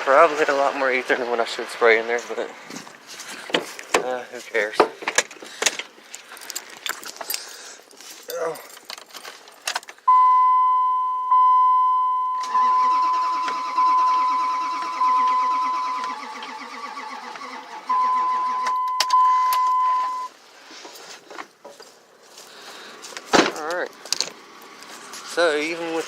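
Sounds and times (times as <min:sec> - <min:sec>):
warning chime dinging: 0:10.1 - 0:16.2, 0:17.9 - 0:20.3
engine cranking on starter: 0:12.4 - 0:18.9.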